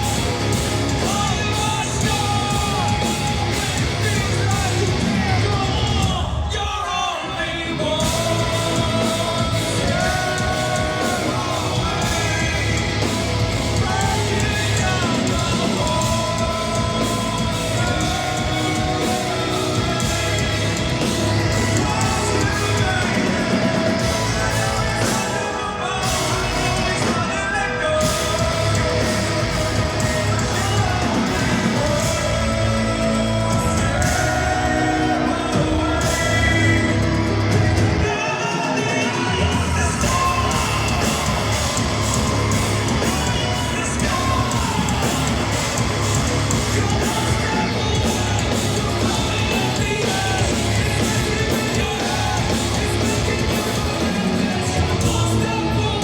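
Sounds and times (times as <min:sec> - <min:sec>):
hard rock band playing: 0:00.0 - 0:56.0
lead vocalist singing: 0:00.0 - 0:56.0.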